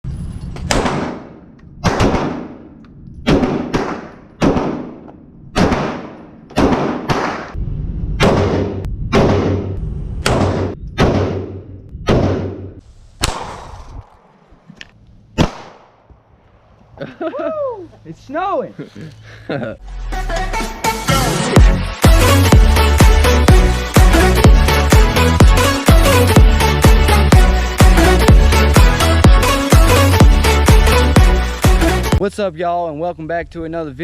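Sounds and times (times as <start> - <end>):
handgun shots echoing: 15.4 - 16.0.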